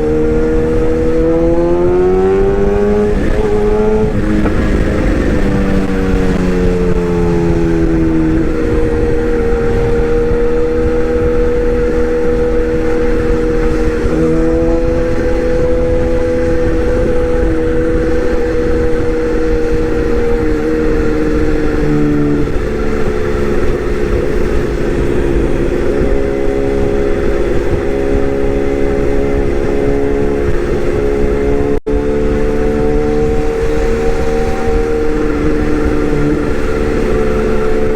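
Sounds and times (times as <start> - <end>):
excavator diesel engine running: 2.8 - 11.6.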